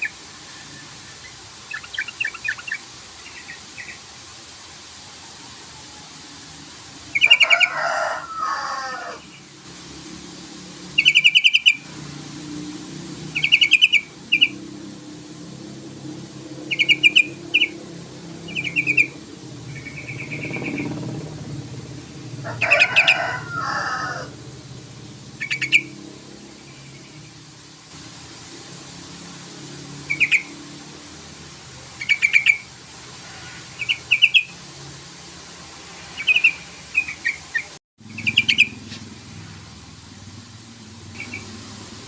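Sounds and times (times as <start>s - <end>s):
bird chattering calls: 11.0s - 11.8s, 13.4s - 14.6s, 16.7s - 17.8s, 18.4s - 21.0s, 25.4s - 26.0s, 30.1s - 30.5s, 32.0s - 32.7s, 36.2s - 38.8s, 41.1s - 41.5s.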